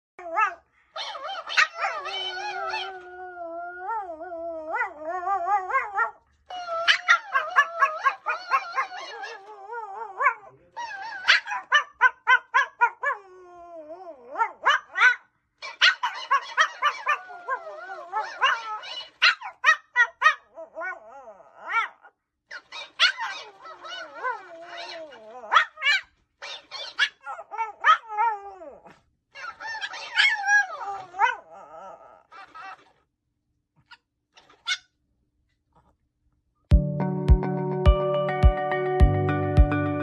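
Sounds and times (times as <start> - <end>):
puppy howling: 0.2 - 32.8
puppy yipping and barking: 0.3 - 3.0, 5.6 - 9.5, 10.2 - 13.2, 14.4 - 21.0, 21.6 - 28.4, 29.4 - 31.5, 33.8 - 35.0.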